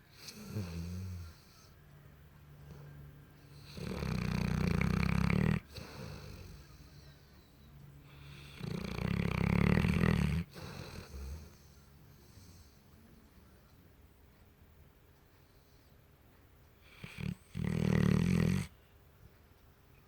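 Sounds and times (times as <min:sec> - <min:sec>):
dog snoring: 0:00.1 - 0:01.8, 0:02.7 - 0:07.0, 0:08.1 - 0:12.8, 0:16.8 - 0:18.7
dog breathing: 0:02.7 - 0:12.9.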